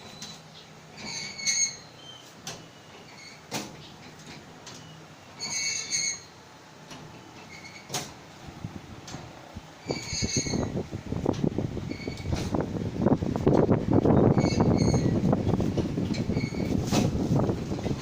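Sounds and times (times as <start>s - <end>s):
metal squealing: 0.0s - 3.9s, 4.8s - 6.4s, 7.2s - 8.0s, 9.8s - 10.9s, 11.8s - 12.6s, 14.0s - 18.0s.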